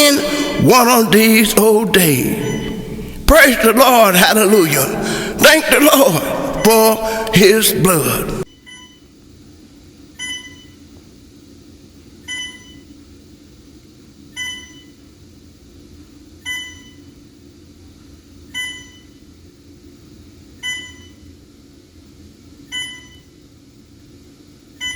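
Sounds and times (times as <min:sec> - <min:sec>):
heart monitor beeping: 0:00.0 - 0:04.0, 0:05.0 - 0:09.1, 0:10.2 - 0:10.8, 0:12.2 - 0:13.0, 0:14.3 - 0:15.0, 0:16.4 - 0:17.2, 0:18.5 - 0:19.2, 0:20.6 - 0:21.3, 0:22.6 - 0:23.3
steady low hum: 0:00.0 - 0:14.3.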